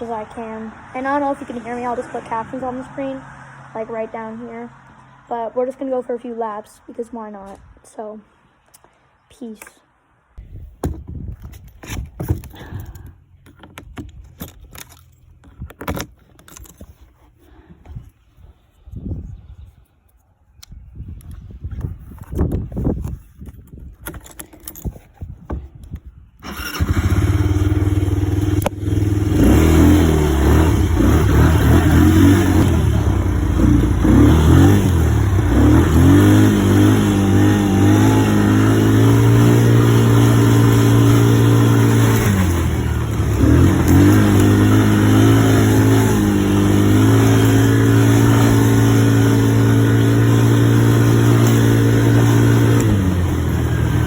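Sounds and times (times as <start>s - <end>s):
atv engine revving: 26.4s - 54.0s.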